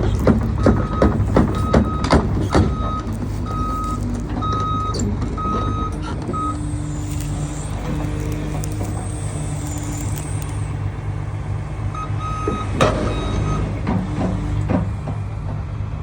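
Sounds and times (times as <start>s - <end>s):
backup alarm beeping: 0.0s - 10.8s
excavator diesel engine running: 0.0s - 16.0s.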